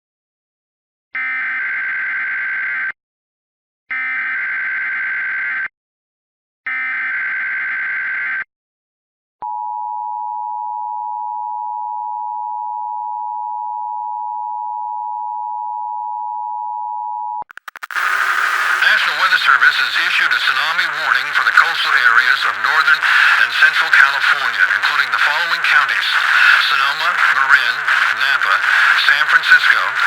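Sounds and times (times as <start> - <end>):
buzzing digital data screech: 17.5 - 20.3.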